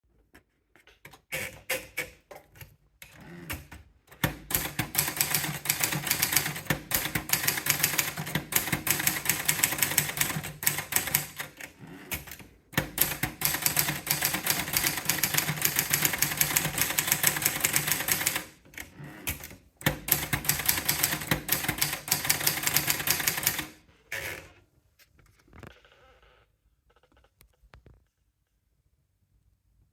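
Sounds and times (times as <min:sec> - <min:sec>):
typewriter typing: 0:03.5 - 0:23.8.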